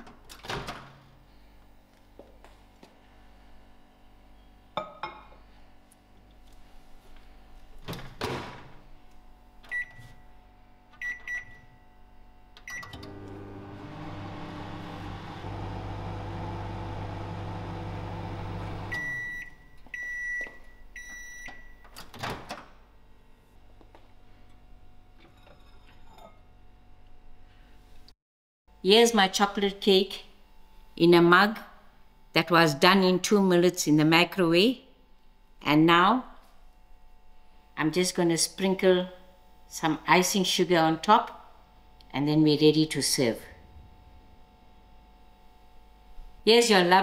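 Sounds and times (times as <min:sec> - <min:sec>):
microwave oven humming: 0:09.6 - 0:19.7
microwave keypad beeps: 0:11.0 - 0:11.7, 0:12.7 - 0:13.0, 0:18.9 - 0:21.8.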